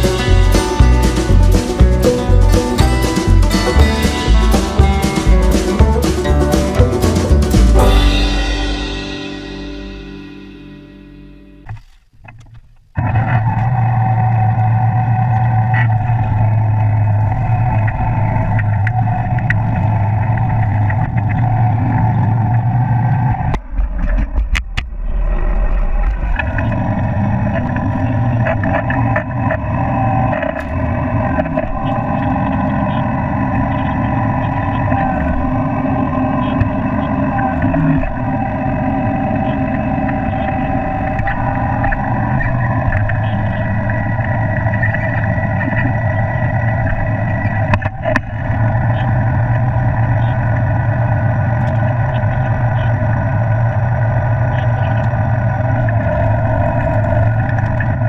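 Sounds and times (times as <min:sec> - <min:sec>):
farm machinery engine running: 0:00.0 - 0:11.7.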